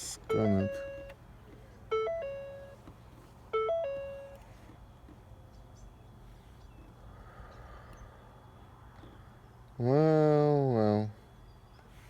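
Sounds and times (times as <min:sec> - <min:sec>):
electronic three-note chime: 0:00.3 - 0:01.1.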